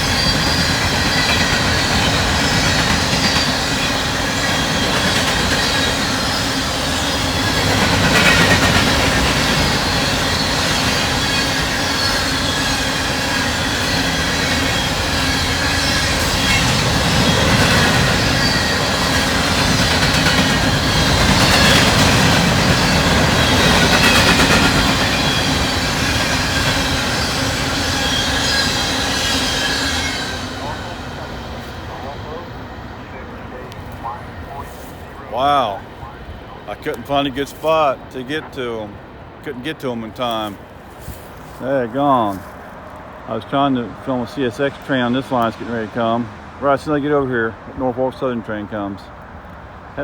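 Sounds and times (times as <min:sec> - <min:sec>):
high wheel squeal: 0:00.0 - 0:32.4
freight train rumbling on rails: 0:00.0 - 0:50.0.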